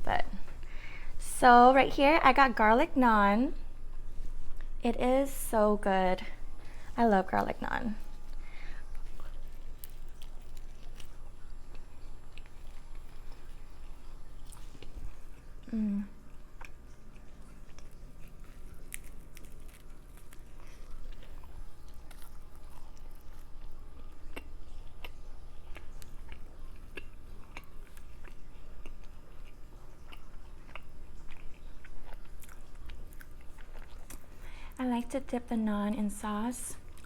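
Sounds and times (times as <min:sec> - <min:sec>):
chewing and biting bread: 0:08.0 - 0:34.7, 0:36.8 - 0:37.0.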